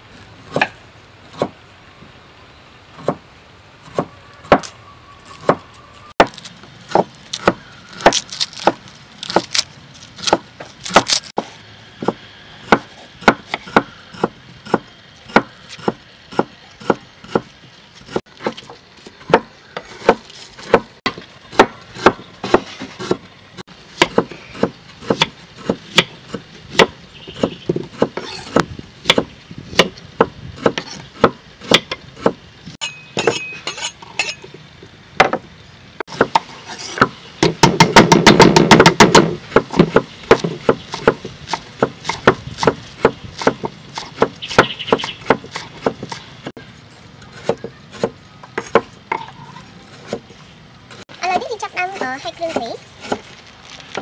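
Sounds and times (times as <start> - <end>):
sharp knocks on wood: 37.0 - 41.2.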